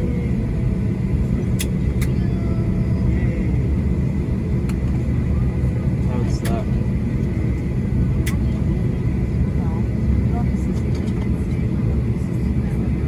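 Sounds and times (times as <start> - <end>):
jet cabin low rumble: 0.0 - 13.0.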